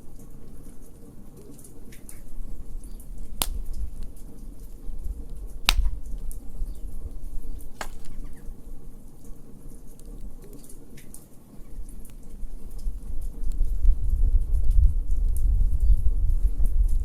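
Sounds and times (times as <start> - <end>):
wood fire crackling: 0.0 - 13.6
sharp pops of fire: 2.8 - 8.6.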